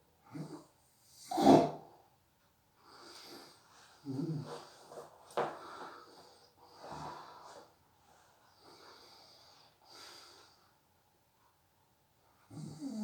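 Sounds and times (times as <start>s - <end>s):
person snorting in sleep: 0.3s - 1.9s, 4.0s - 4.8s, 12.5s - 13.0s.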